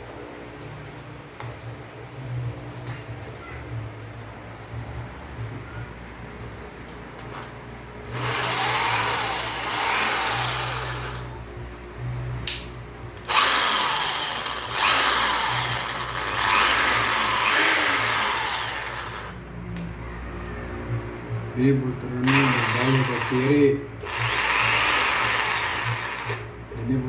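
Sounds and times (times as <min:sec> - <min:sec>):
impact drill running free: 0:08.1 - 0:11.2, 0:13.2 - 0:19.4, 0:22.2 - 0:26.4
drill click: 0:08.1 - 0:11.3, 0:13.2 - 0:19.4, 0:22.2 - 0:26.4.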